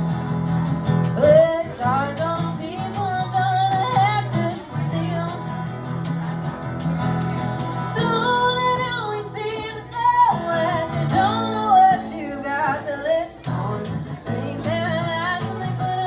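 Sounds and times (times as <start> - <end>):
jingling percussion: 0.0 - 16.0
person singing lead vocal: 8.0 - 16.0.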